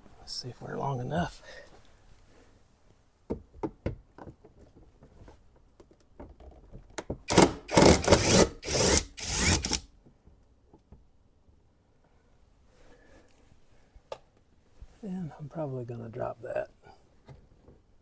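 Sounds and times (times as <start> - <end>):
ratchet clicking: 7.3 - 9.9.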